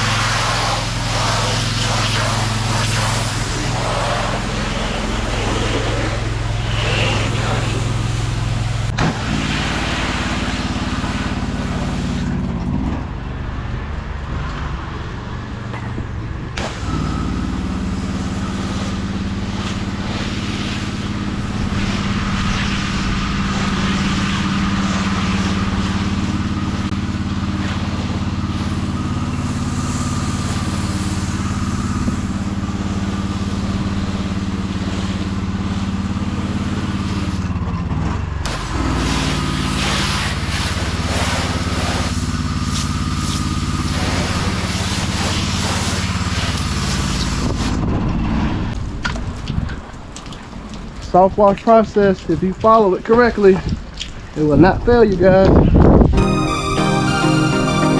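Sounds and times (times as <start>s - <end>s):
high noisy hiss: 0.0s - 12.4s, 16.6s - 37.4s
engine running: 0.0s - 54.9s.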